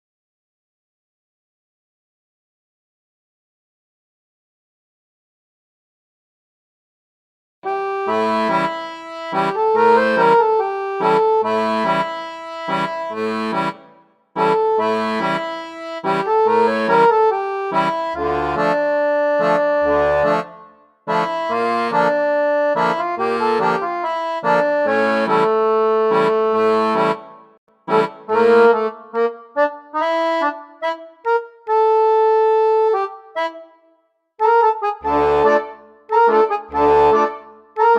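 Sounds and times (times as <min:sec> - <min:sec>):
instrumental background music: 0:07.7 - 0:37.9.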